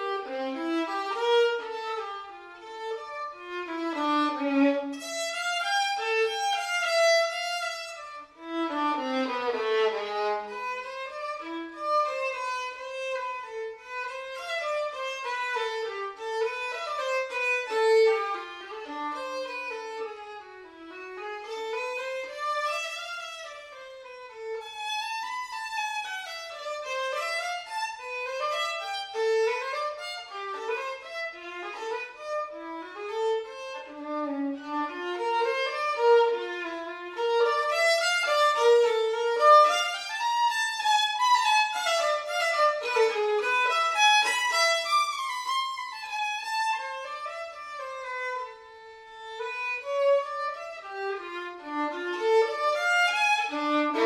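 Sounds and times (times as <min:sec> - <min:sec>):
violin melody: 0:00.0 - 0:54.0.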